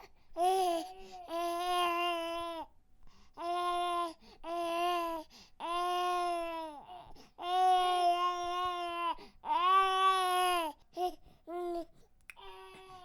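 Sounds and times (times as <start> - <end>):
infant crying: 3.4 - 13.0.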